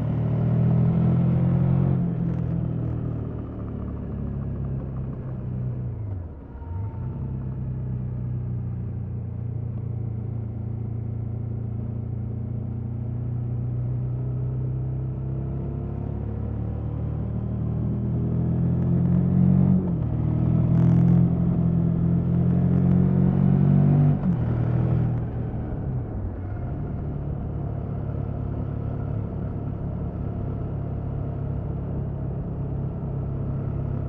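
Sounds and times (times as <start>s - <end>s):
motorcycle engine running: 2.2s - 6.3s.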